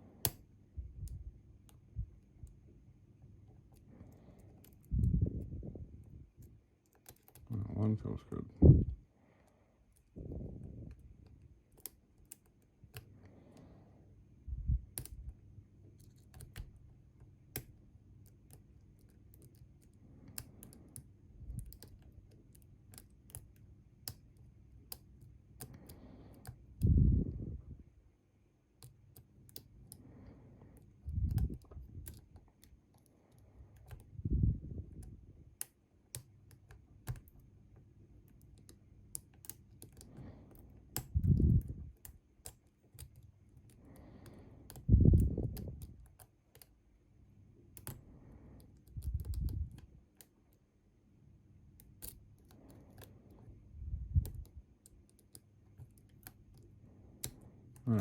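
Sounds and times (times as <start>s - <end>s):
lock picks clicking in lock: 51.8s - 53.1s.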